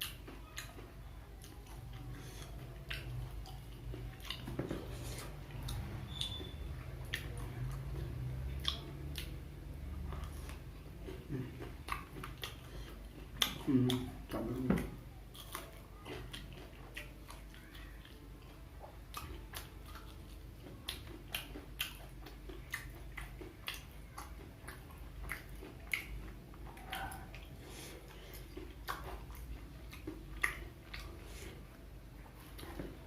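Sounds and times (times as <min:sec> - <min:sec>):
crunchy fried snacks chewing: 0:10.0 - 0:33.0.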